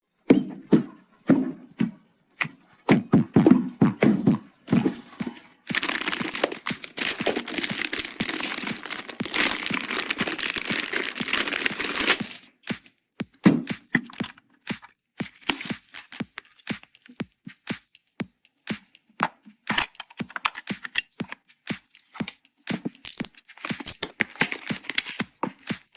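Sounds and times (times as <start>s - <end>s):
packaging crinkling and tearing: 5.2s - 12.5s.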